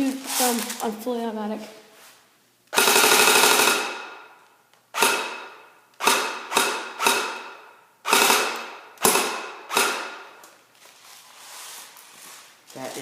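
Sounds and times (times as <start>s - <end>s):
airsoft rifle firing: 2.7s - 10.4s.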